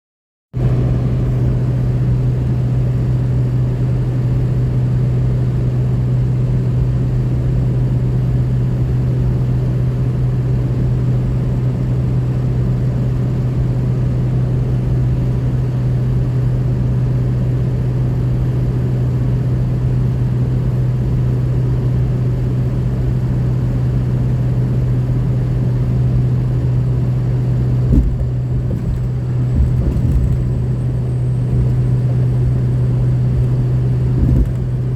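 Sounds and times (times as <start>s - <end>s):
diesel engine running steadily: 0.6s - 34.9s
brief knock: 27.9s - 30.4s, 34.2s - 34.7s.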